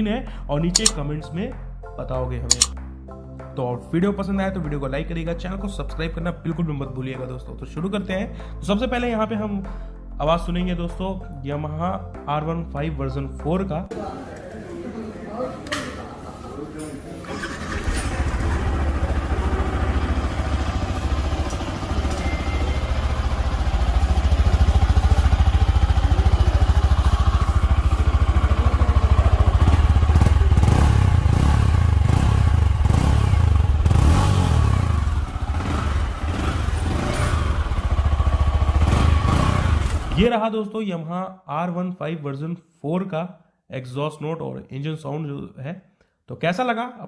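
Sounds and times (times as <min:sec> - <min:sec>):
motorcycle engine running: 0:00.8 - 0:01.0, 0:17.4 - 0:40.3.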